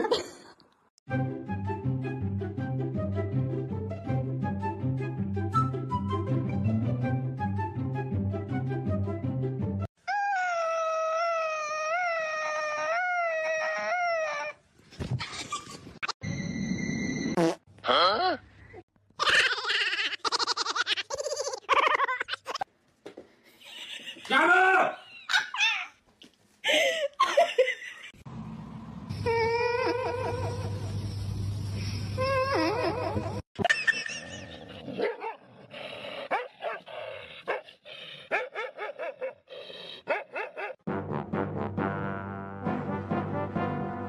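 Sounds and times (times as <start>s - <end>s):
laughter: 0.0s - 0.6s, 15.2s - 16.1s, 19.2s - 22.7s, 23.6s - 24.4s, 26.7s - 28.2s, 33.6s - 35.0s
background music: 1.1s - 9.9s, 40.9s - 44.0s.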